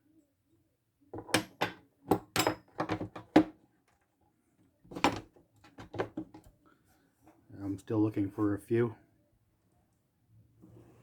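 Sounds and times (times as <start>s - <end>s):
hand tools knocking on toolbox drawer: 1.2s - 3.6s.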